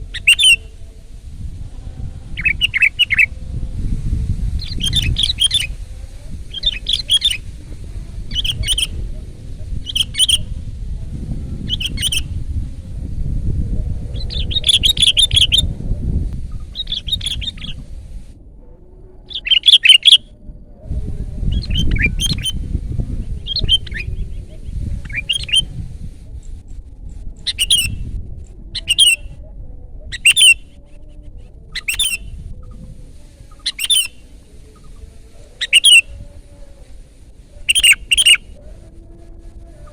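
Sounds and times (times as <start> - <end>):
low rumble: 0.0 - 19.5, 20.2 - 37.7
bird chirping loudly: 0.1 - 0.6, 4.6 - 5.7, 6.5 - 7.4, 8.3 - 8.9, 11.7 - 12.2, 19.3 - 20.2, 30.1 - 30.6, 31.8 - 32.2, 33.7 - 34.2, 35.6 - 36.0, 37.7 - 38.4.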